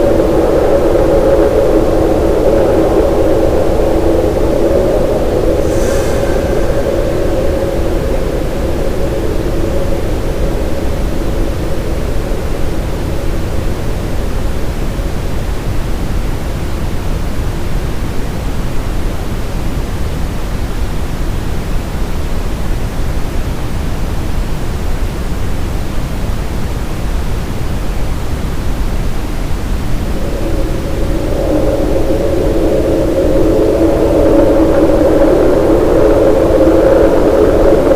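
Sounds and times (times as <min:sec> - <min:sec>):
brown noise: 0:02.0 - 0:19.7.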